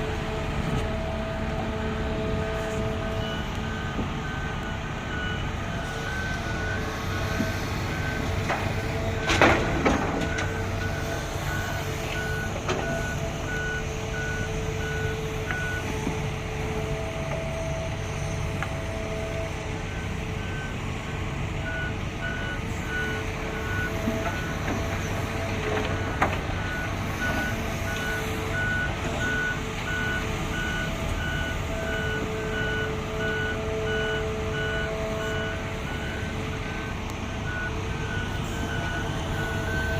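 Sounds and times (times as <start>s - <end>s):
engine rumble: 0.0s - 39.9s
reversing alarm beeping: 2.2s - 39.9s.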